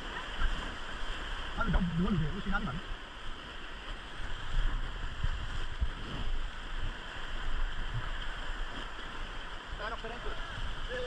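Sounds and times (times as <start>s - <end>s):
river water rushing: 0.0s - 11.0s
low rumbling: 1.5s - 2.9s.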